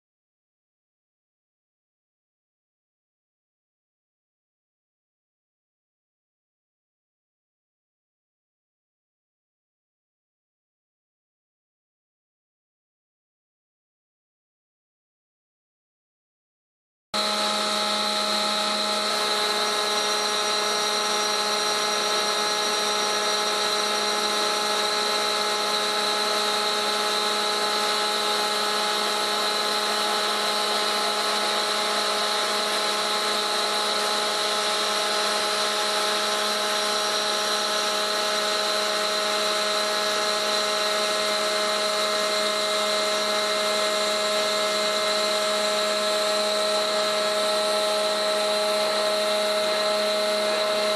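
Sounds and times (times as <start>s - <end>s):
machine motor whine: 17.2s - 50.9s.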